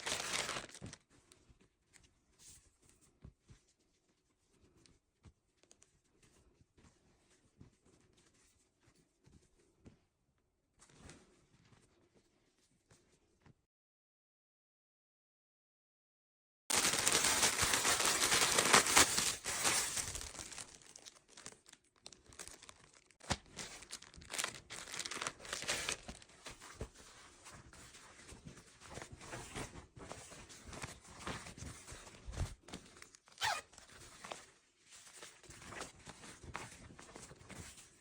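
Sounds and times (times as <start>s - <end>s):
packaging being torn open: 0.0s - 0.8s, 16.7s - 26.2s
packaging crinkling: 0.0s - 1.0s, 16.7s - 26.4s.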